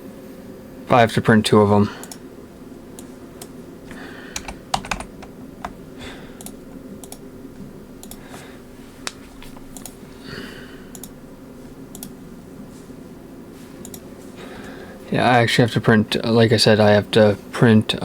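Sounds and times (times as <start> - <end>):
steady low hum: 0.0 - 18.0
keyboard key clicks: 4.4 - 5.8.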